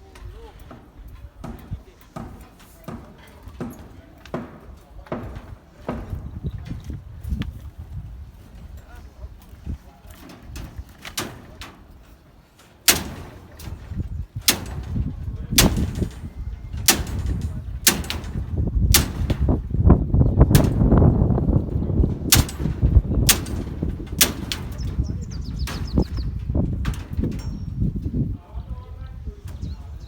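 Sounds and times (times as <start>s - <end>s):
sharp knocks: 0.7s - 6.4s, 12.8s - 27.9s
low rumbling: 12.8s - 30.0s.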